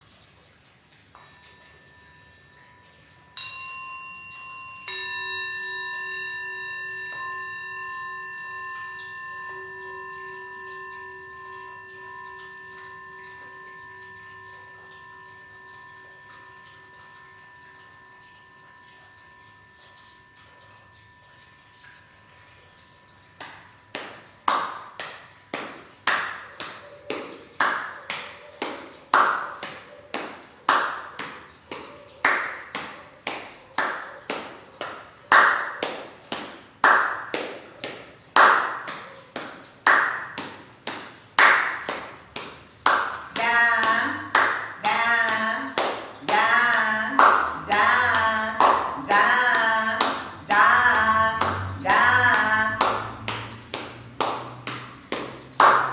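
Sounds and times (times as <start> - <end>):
rhythmic hand claps and taps: 23.3 - 55.9
person singing: 43.4 - 53.0.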